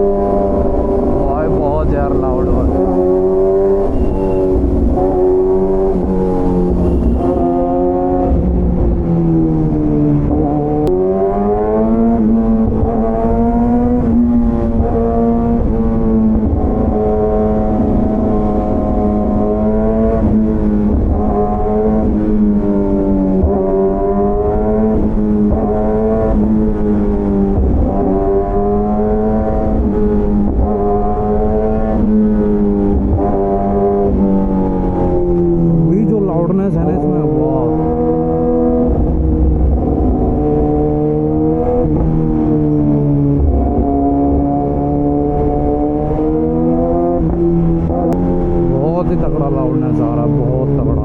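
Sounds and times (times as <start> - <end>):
motorcycle engine and exhaust: 0.0 - 51.0
motorcycle exhaust at high revs: 2.7 - 9.0.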